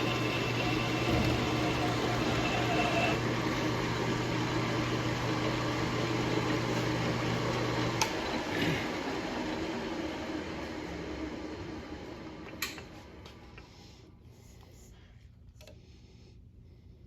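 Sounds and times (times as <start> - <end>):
lathe motor hum: 0.0 - 12.3.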